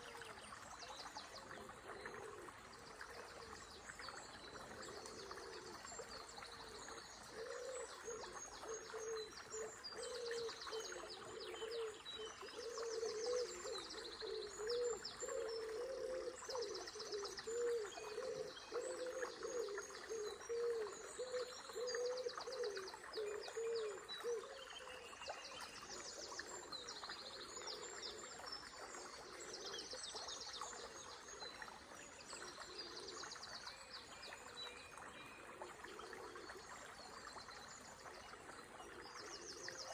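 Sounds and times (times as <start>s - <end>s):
songbirds trilling: 0.0s - 25.2s.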